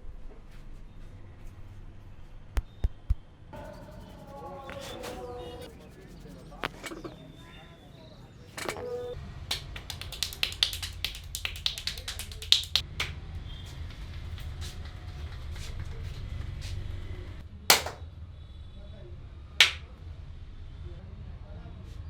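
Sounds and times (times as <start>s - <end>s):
hands making sharp clicks: 9.5s - 13.1s, 17.7s - 18.0s, 19.6s - 19.8s
loud joint cracks: 17.7s - 18.0s.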